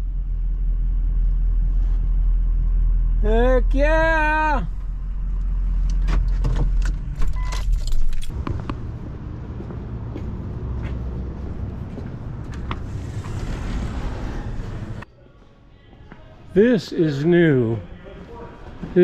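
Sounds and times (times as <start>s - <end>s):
steady low rumble: 0.0s - 3.7s, 4.6s - 15.1s
keys jangling: 7.2s - 8.4s.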